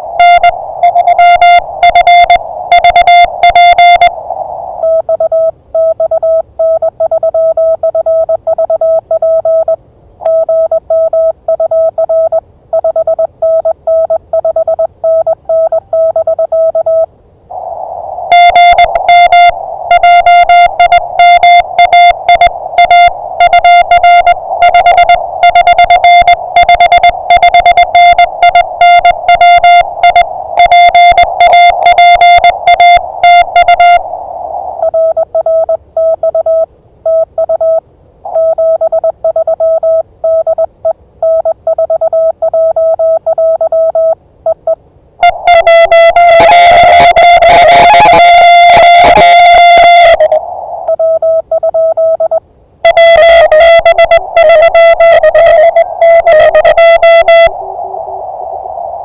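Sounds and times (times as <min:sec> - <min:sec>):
morse code sidetone: 0:00.0 - 0:17.1, 0:18.3 - 0:58.4
receiver hiss: 0:00.0 - 0:59.0
harsh keyed morse tone: 0:18.3 - 0:34.1, 0:45.2 - 0:51.0, 0:52.9 - 0:58.2.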